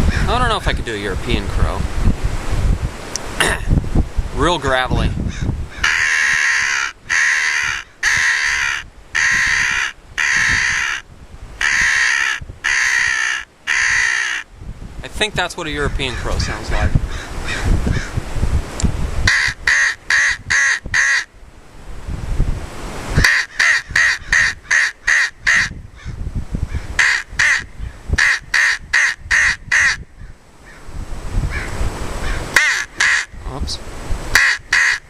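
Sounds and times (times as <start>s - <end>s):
wind rumble on microphone: 0.0s - 35.0s
crow call caws: 5.3s - 11.0s, 11.6s - 14.5s, 17.1s - 18.2s, 19.3s - 21.3s, 23.2s - 30.8s, 31.5s - 33.4s, 34.4s - 35.0s.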